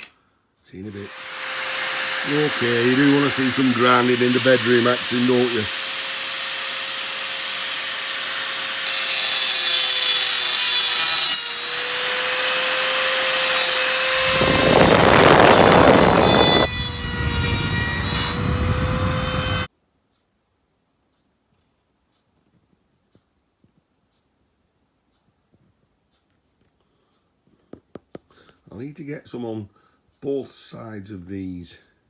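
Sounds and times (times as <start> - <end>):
rotary tool grinding metal: 0.9 - 19.7.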